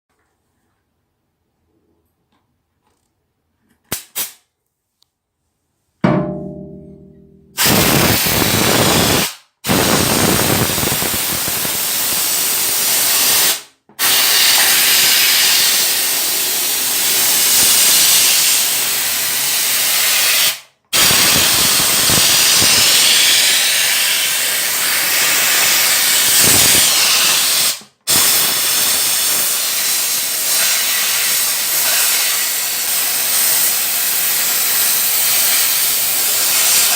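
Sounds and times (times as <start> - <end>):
loud steady hiss: 7.6 - 36.9.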